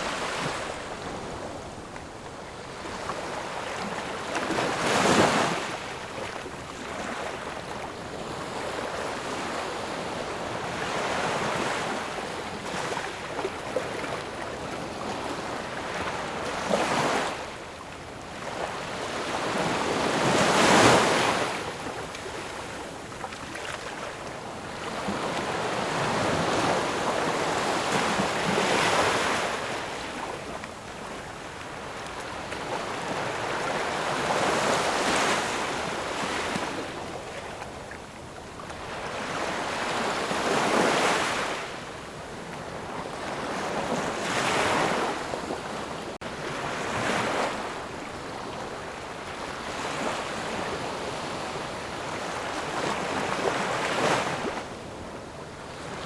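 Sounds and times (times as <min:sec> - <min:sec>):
waves breaking and washing back: 0:00.0 - 0:56.0.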